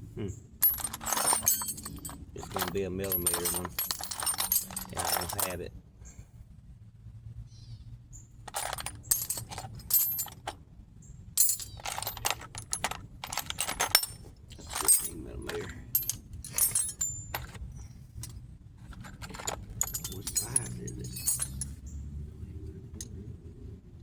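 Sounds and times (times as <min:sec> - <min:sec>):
metal hand tools clinking: 0:00.6 - 0:05.6, 0:08.5 - 0:10.6, 0:11.4 - 0:21.8.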